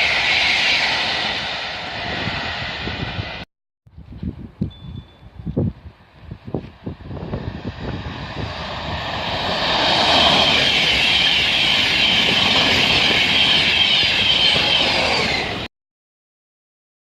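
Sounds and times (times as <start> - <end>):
train passing at speed: 0.0 - 3.5, 6.0 - 15.7.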